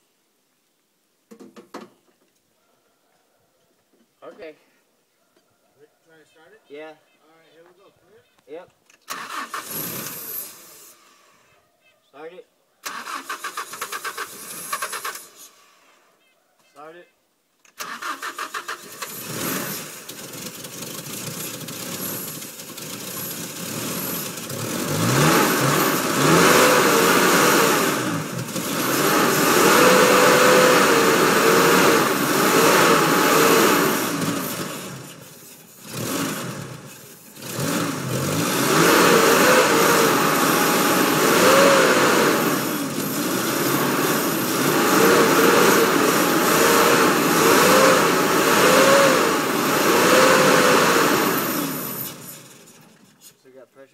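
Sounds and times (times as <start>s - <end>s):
pickup engine cranking and revving: 9.0s - 10.9s, 12.8s - 15.4s, 17.7s - 53.2s.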